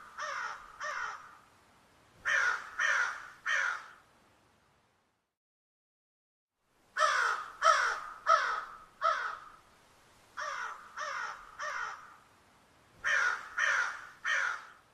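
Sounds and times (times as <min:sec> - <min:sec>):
crows cawing: 0:00.0 - 0:01.5, 0:02.2 - 0:04.0, 0:07.0 - 0:09.6, 0:10.4 - 0:12.3, 0:13.0 - 0:14.9.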